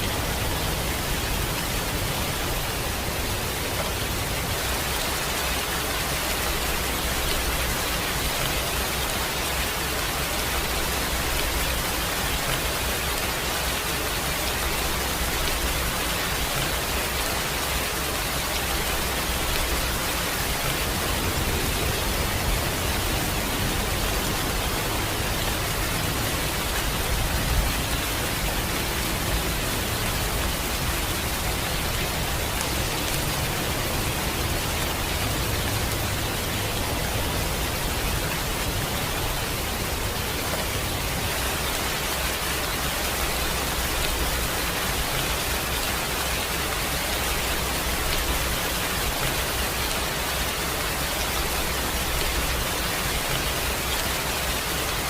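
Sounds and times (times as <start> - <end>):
steady rain: 0.0 - 55.0.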